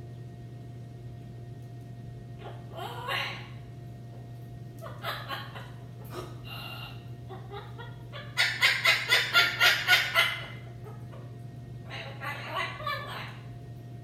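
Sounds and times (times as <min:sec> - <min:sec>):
macaw squawking: 0:02.4 - 0:03.6, 0:04.8 - 0:05.8, 0:06.5 - 0:10.7, 0:11.9 - 0:13.4.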